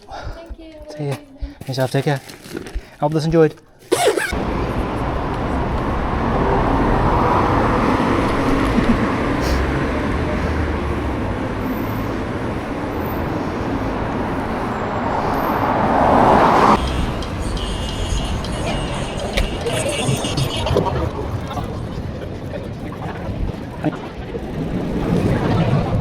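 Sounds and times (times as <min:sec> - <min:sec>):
road and traffic noise: 0:00.0 - 0:26.0.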